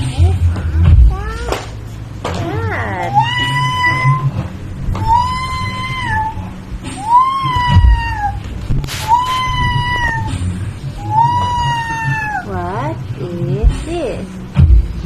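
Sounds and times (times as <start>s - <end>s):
cat meowing: 1.0s - 1.7s, 2.8s - 12.6s.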